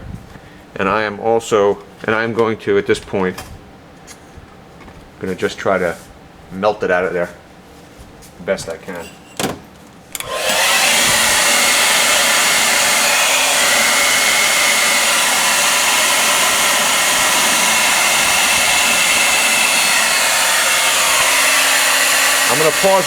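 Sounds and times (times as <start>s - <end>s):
hair dryer blowing: 10.2s - 23.0s.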